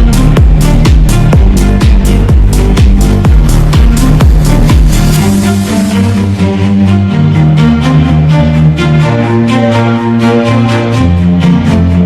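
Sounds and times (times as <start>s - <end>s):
background music with beat: 0.0s - 12.0s.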